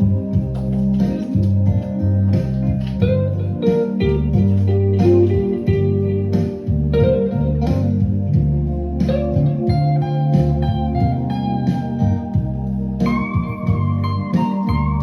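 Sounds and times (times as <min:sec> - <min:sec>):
guitar-led instrumental music: 0:00.0 - 0:15.0.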